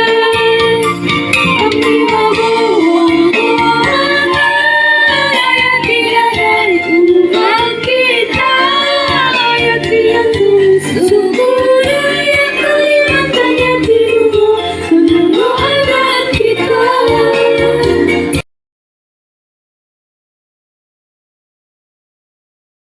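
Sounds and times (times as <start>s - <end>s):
woman singing: 0.0s - 18.3s
instrumental backing music: 0.0s - 18.4s.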